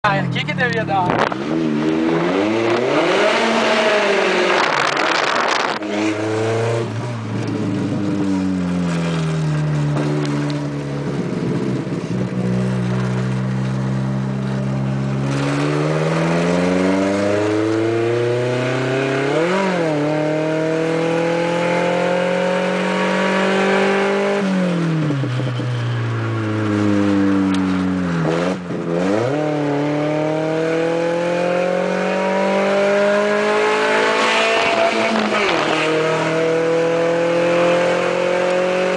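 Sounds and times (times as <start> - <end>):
pickup engine and exhaust revving: 0.2 - 25.7.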